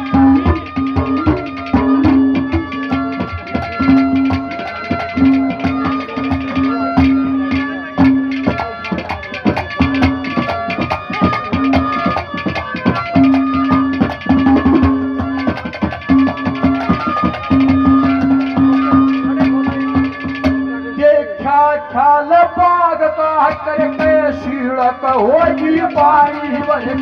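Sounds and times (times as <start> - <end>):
low held note: 0.0 - 4.3
hand drums fast rhythm: 0.0 - 21.0, 22.4 - 27.0
melody instrument: 0.0 - 21.3.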